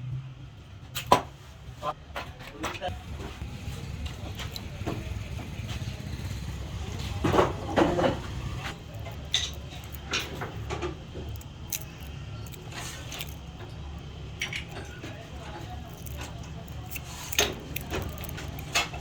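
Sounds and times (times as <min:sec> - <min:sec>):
workshop machinery humming: 0:00.9 - 0:19.0
sharp clicks of small parts: 0:03.8 - 0:06.0, 0:07.2 - 0:19.0.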